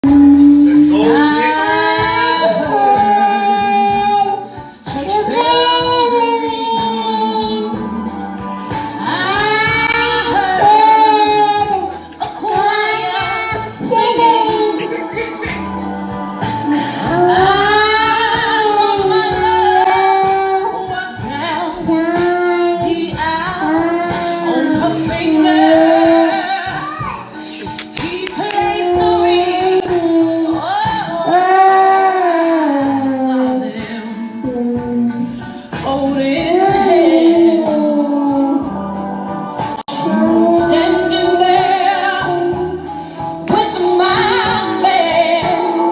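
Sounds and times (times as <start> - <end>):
small child singing: 0.8 - 7.9, 9.1 - 15.6, 17.1 - 27.4, 28.5 - 33.2, 36.3 - 38.6.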